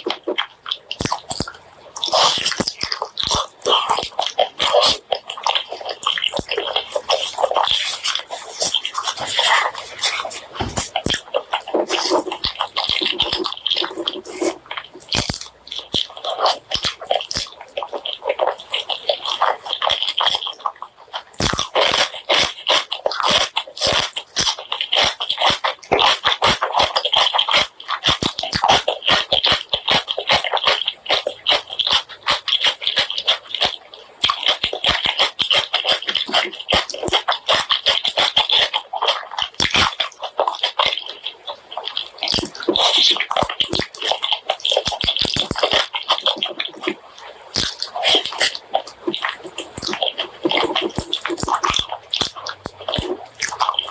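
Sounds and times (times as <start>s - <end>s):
wet chewing mouth clicks: 0.0s - 53.9s.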